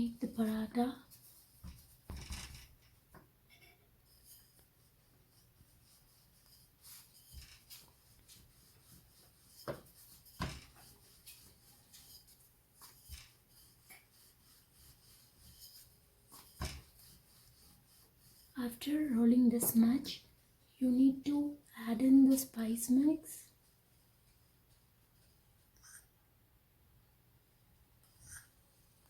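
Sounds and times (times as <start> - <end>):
rolling pin rubbing on dough: 4.1 - 19.8.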